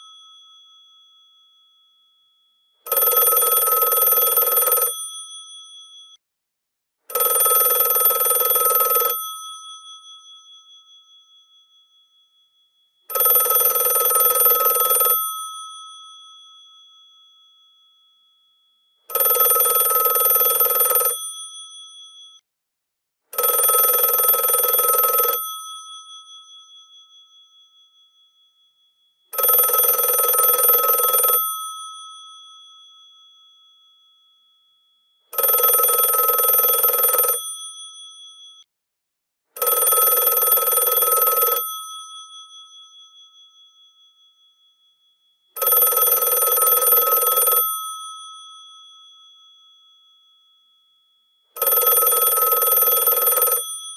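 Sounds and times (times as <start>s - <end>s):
rotary telephone bells ringing: 2.9s - 5.7s, 7.2s - 10.3s, 13.1s - 15.9s, 19.1s - 21.7s, 23.4s - 26.5s, 29.4s - 32.1s, 35.4s - 38.4s, 39.6s - 42.6s, 45.6s - 48.4s, 51.6s - 53.9s.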